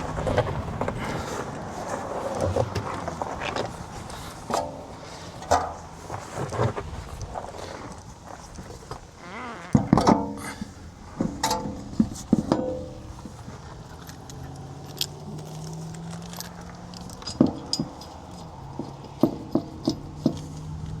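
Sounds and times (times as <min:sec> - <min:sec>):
metallic clinks and knocks: 0:09.8 - 0:20.8.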